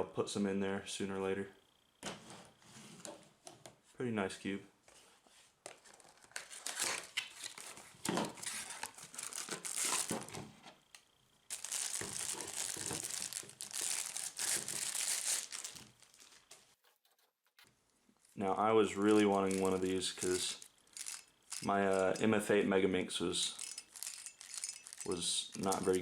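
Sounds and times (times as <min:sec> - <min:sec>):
plastic packaging crinkling: 0:05.8 - 0:10.4, 0:11.5 - 0:16.5, 0:18.2 - 0:22.4, 0:23.3 - 0:26.0.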